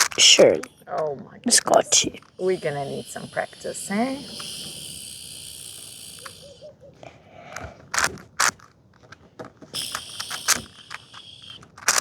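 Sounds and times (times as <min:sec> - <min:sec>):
puzzle cube clicking: 0:00.0 - 0:00.8, 0:01.6 - 0:06.6, 0:07.5 - 0:08.7, 0:09.7 - 0:12.0
high insect buzz: 0:01.6 - 0:06.8, 0:09.8 - 0:12.0.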